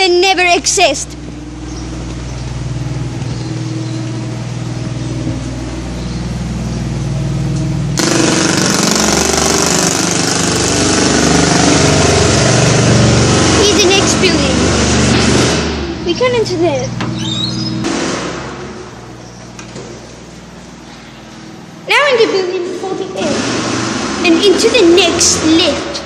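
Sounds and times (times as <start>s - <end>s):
vehicle engine running: 0.0s - 26.0s
loud rushing noise: 7.9s - 16.1s, 17.8s - 19.2s, 23.1s - 26.0s.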